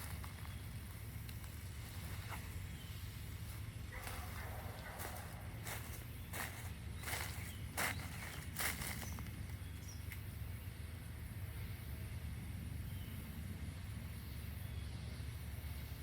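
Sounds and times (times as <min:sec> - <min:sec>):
low outdoor rumble: 0:00.0 - 0:16.0.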